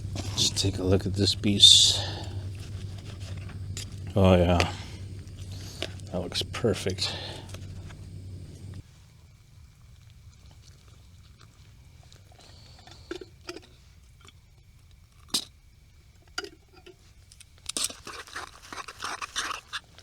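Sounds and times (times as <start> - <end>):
low steady rumble: 0.0 - 8.8.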